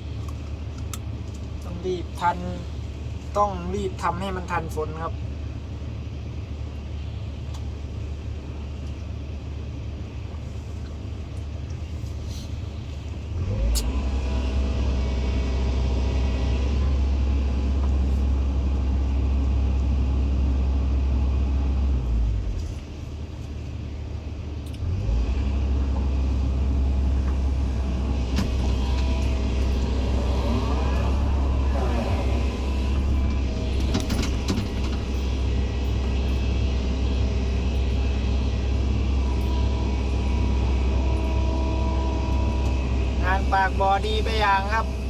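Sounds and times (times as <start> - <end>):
excavator diesel engine running: 0.0 - 45.0
rising whine: 26.0 - 45.0.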